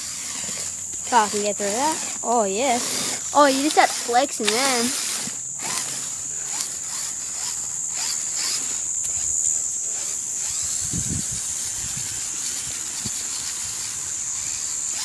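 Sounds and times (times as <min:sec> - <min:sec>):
insects chirring: 0:00.0 - 0:15.0.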